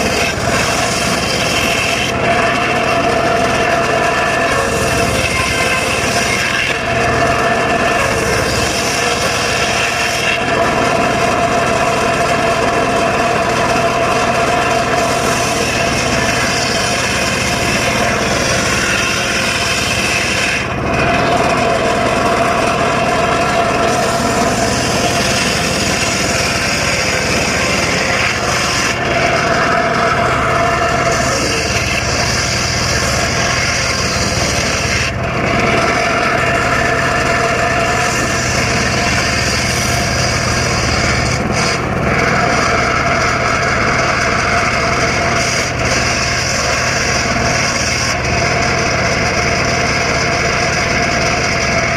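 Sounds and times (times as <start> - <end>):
circular saw cutting wood: 0.0 - 51.9.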